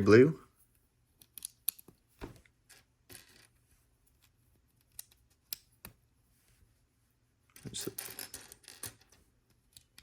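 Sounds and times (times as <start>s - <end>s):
plastic toy bricks clicking: 1.2s - 1.8s.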